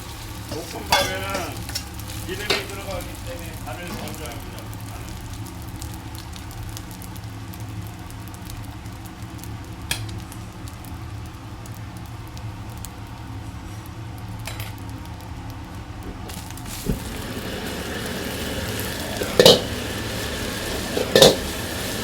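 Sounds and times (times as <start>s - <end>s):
food frying and sizzling: 0.0s - 22.0s.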